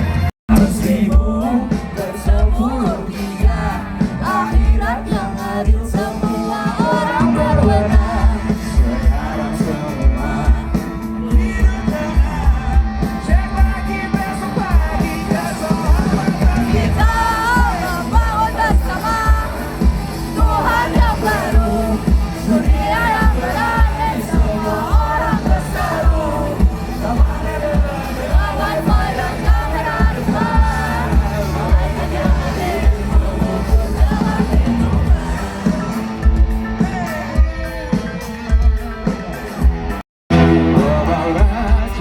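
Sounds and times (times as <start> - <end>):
steady drum beat: 0.5 - 42.0
person singing: 40.3 - 42.0.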